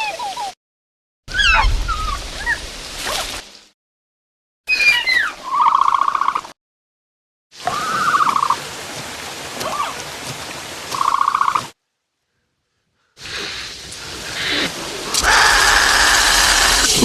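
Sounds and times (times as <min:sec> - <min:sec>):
steady hiss: 0:13.2 - 0:17.0
creature rising call: 0:14.6 - 0:17.0.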